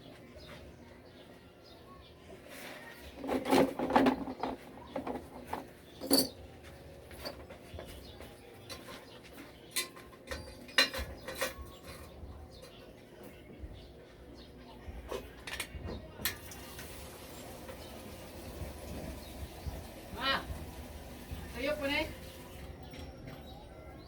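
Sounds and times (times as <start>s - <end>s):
metal clinks of hand tools: 6.0s - 6.4s.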